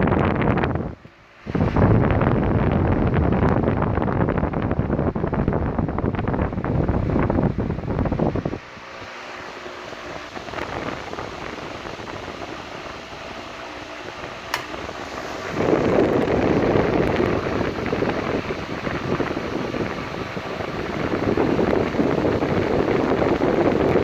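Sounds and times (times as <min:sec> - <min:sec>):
electric fan air rush: 0:00.0 - 0:24.0
fan hum: 0:00.0 - 0:24.0
fan switch click: 0:14.4 - 0:17.4.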